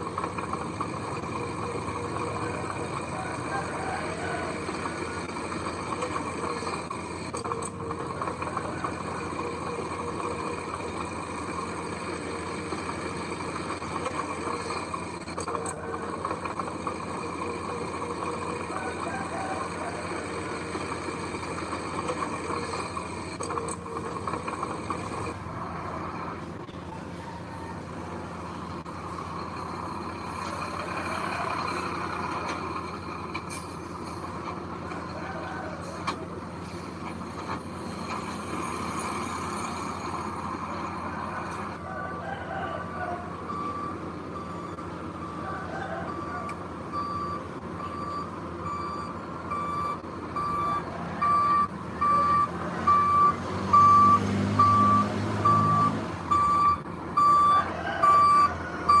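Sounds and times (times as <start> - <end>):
heavy vehicle engine running: 0.0 - 59.0
reversing alarm beeping: 42.8 - 59.0.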